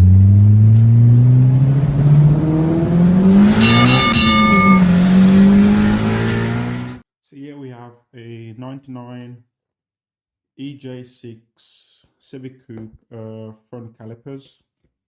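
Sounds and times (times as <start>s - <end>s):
car engine revving: 0.0s - 7.0s
high-pitched squeal: 3.4s - 6.6s.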